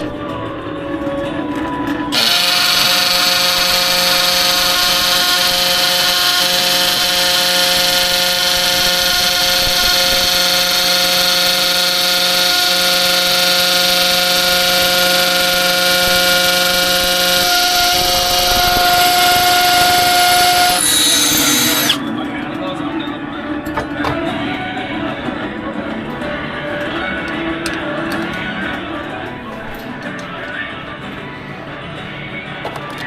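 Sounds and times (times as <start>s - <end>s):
power tool motor whining: 2.1s - 22.0s.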